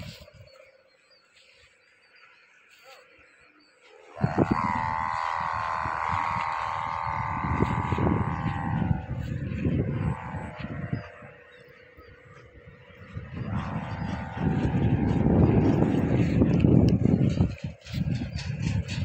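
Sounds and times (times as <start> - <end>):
kite hummer droning: 0.0 - 19.0
low rumbling: 4.2 - 19.0.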